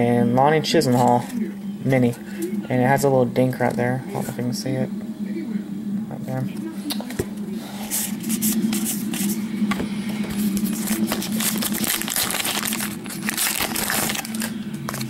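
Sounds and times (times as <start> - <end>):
steady low hum: 0.0 - 15.0
foil wrapper crinkling: 10.3 - 15.0.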